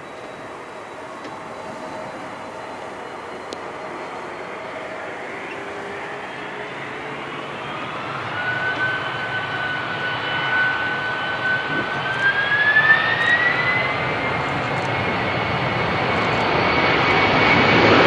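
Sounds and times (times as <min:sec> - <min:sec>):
jet engines spooling up: 0:00.0 - 0:18.0.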